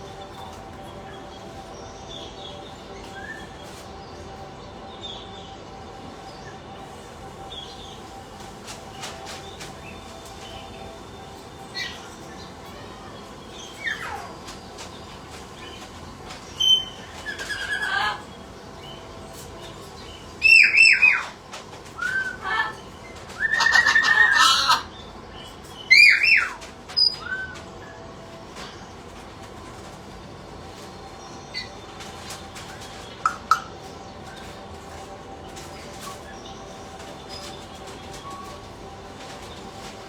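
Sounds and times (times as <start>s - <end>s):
parrots squawking: 16.7s - 18.3s, 22.0s - 25.0s
parrot whistled calls: 23.4s - 24.9s.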